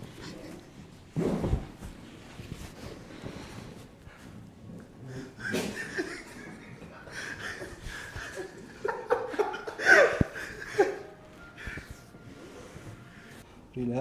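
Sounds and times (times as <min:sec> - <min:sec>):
person chuckling and laughing: 0:05.1 - 0:12.0.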